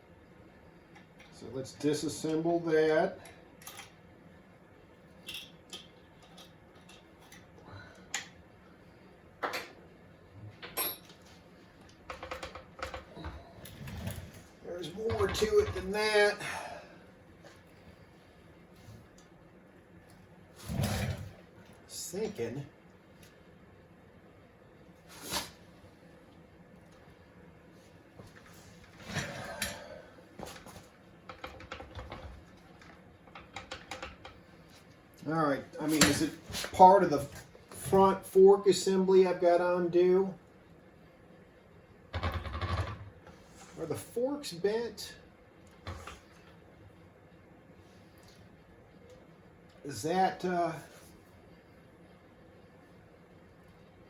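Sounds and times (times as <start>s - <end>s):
hand tools and metal parts clinking: 10.6s - 11.3s.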